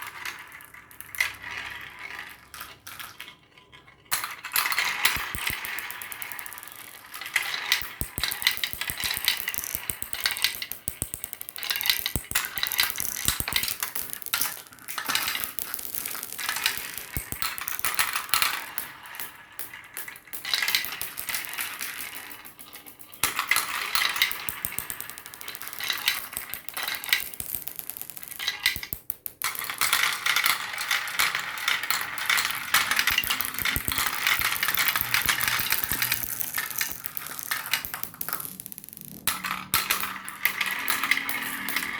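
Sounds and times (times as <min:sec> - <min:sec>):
marbles rolling down a track: 0:00.0 - 0:41.9.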